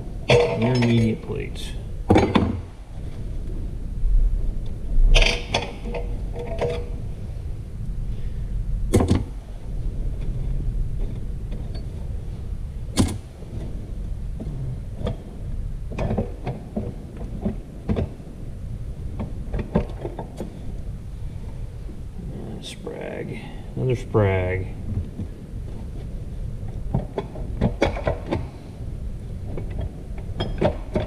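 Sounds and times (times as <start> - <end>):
low hum: 0.0 - 31.0
metal parts knocking and clinking: 0.3 - 1.2.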